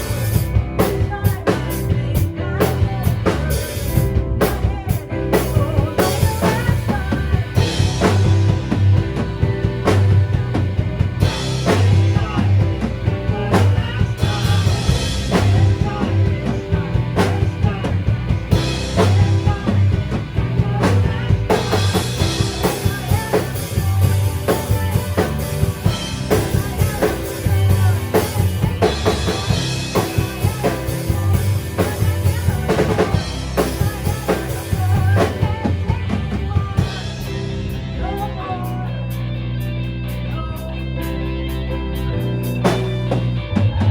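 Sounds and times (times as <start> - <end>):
electric guitar: 0.0 - 43.9
rock band playing: 0.0 - 43.9
drum beat: 2.9 - 37.4.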